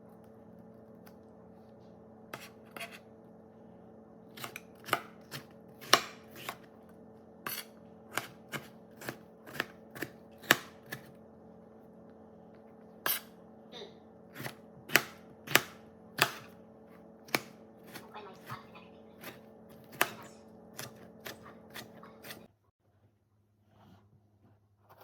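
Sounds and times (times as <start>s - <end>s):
knife chopping on cutting board: 2.3s - 3.0s, 4.3s - 6.7s, 7.5s - 11.1s, 14.3s - 16.6s, 17.2s - 22.5s.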